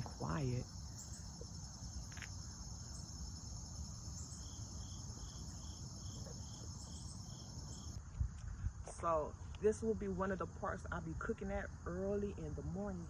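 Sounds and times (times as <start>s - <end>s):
high-pitched insect chorus trilling: 0.0s - 8.0s.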